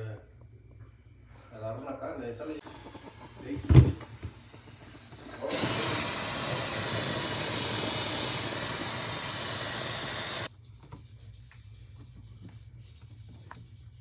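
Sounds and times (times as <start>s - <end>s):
pressurized gas hissing: 2.6s - 10.5s.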